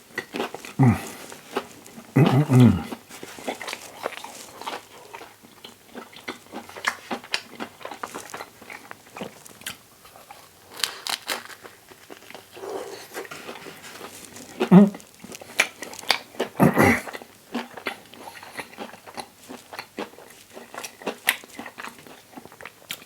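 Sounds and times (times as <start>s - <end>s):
chewing crunches: 0.1s - 23.0s
mouth clicks: 0.8s - 1.2s, 2.2s - 3.0s.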